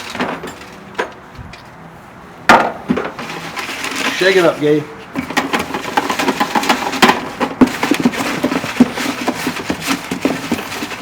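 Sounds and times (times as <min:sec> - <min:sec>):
tickets rattling in container: 0:03.2 - 0:11.0.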